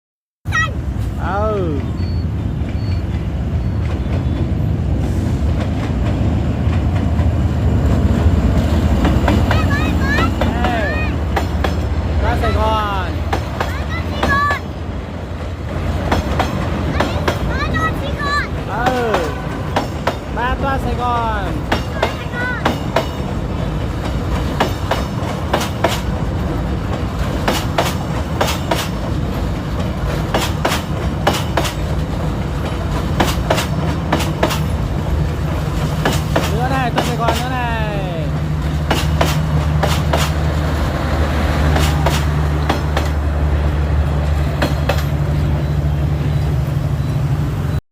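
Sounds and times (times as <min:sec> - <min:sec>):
train rumbling on rails: 0:00.5 - 0:47.8
wheels clicking over rail joints: 0:13.2 - 0:20.4, 0:21.0 - 0:37.8, 0:38.4 - 0:40.9, 0:41.6 - 0:43.3, 0:44.0 - 0:46.6.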